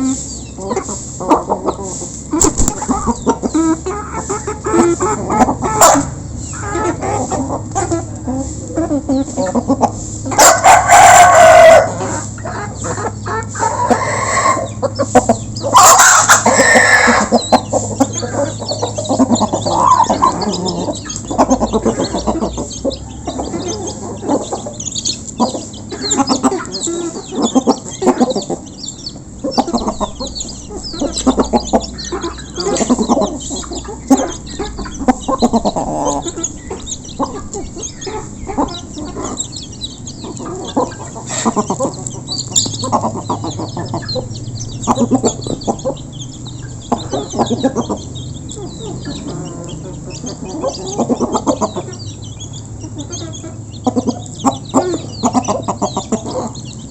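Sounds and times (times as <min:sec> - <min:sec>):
chickens clucking: 0:00.0 - 0:56.9
rooster crowing: 0:10.3 - 0:12.3, 0:13.5 - 0:14.8, 0:15.7 - 0:17.5.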